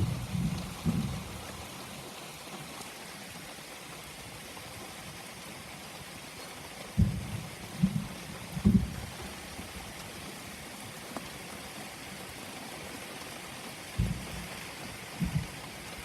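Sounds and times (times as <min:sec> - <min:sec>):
steady rain: 0:00.0 - 0:16.0.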